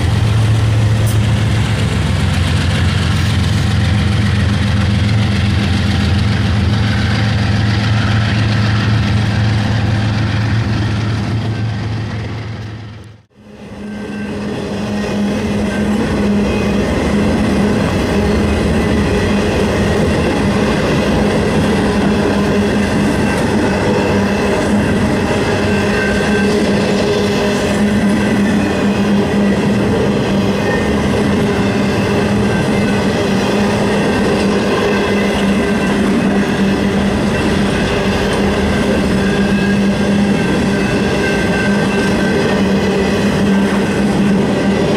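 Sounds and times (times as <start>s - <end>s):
wheels clickety-clack on rails: 0.0s - 13.3s, 13.9s - 44.9s
diesel locomotive engine humming: 0.0s - 44.9s
train cars rumbling on rails: 0.0s - 44.9s.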